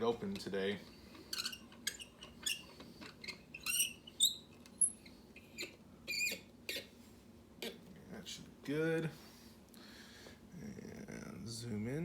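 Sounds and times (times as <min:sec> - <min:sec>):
vise squeaking: 0:01.0 - 0:07.0.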